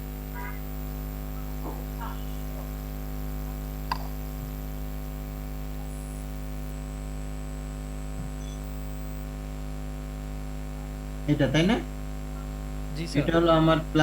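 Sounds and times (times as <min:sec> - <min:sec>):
electrical hum with static hiss: 0:00.0 - 0:14.0
sharp click: 0:03.9 - 0:04.2.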